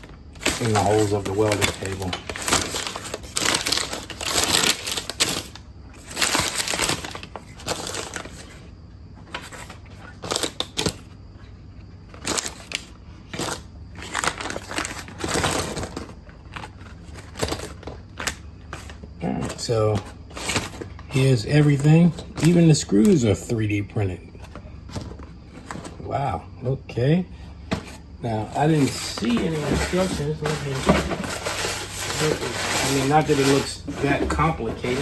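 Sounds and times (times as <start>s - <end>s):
plastic bag crinkling: 0.0s - 8.7s, 12.2s - 19.0s, 28.8s - 35.0s
small plastic parts clattering: 0.0s - 11.5s, 12.1s - 23.3s, 28.6s - 35.0s.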